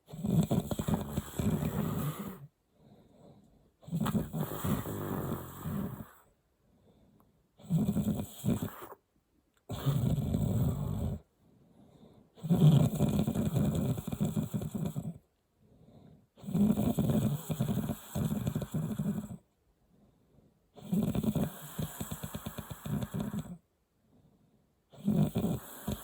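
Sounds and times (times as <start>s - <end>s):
person snoring loudly: 0.1s - 2.5s, 3.8s - 6.2s, 7.6s - 9.0s, 9.7s - 11.2s, 12.4s - 15.2s, 16.4s - 19.4s, 20.8s - 23.6s, 25.0s - 26.0s.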